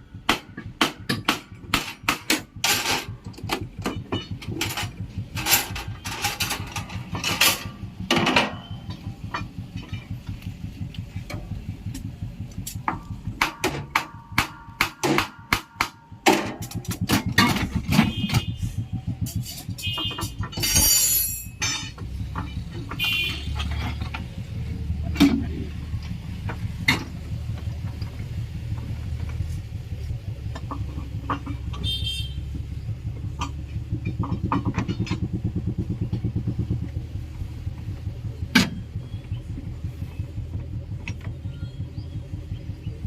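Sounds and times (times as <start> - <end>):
engine idling: 0.0 - 43.0
sharp metallic knocks: 0.2 - 10.4, 12.7 - 24.4, 30.5 - 36.9.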